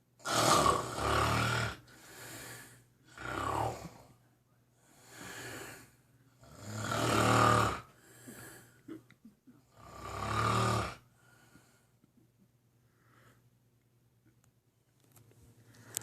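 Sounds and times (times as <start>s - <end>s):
pet snoring heavily: 0.2s - 4.1s, 5.0s - 7.9s, 9.7s - 11.0s.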